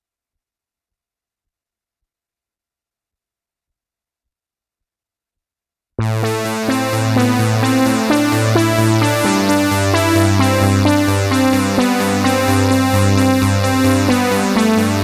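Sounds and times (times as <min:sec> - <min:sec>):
synthesizer bass line: 0:06.0 - 0:15.0
synthesizer bright notes: 0:06.0 - 0:15.0.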